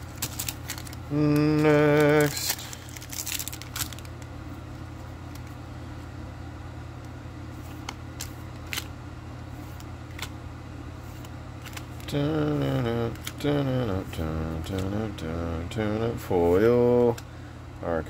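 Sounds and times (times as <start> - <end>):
cards clicking and flicking: 0.0 - 4.3, 7.6 - 8.9, 9.6 - 10.4, 11.1 - 15.0
steady low hum: 0.0 - 18.0
person humming or talking: 1.1 - 2.8, 12.0 - 17.2.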